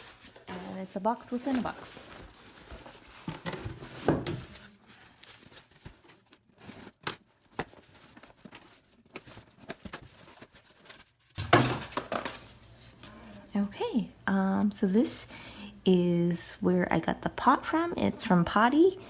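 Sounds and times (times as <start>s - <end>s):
cardboard rustling and scraping: 0.0s - 13.4s.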